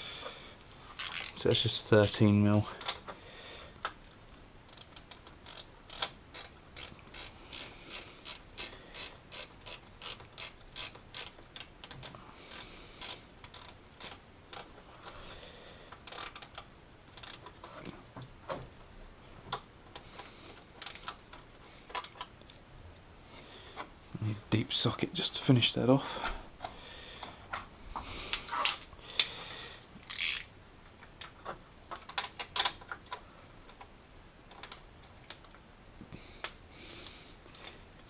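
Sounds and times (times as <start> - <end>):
socket ratchet clicking: 4.7 - 14.7, 16.0 - 17.4.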